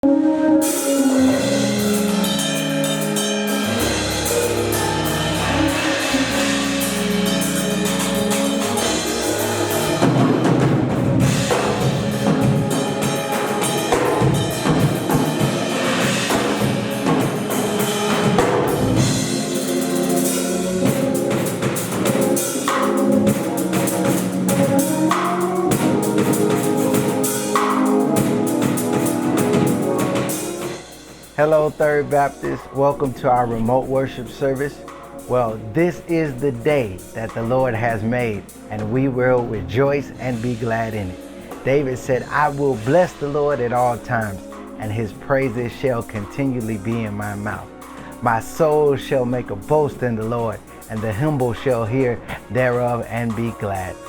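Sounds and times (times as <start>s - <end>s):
instrumental music with drums and bass: 0.6s - 54.0s.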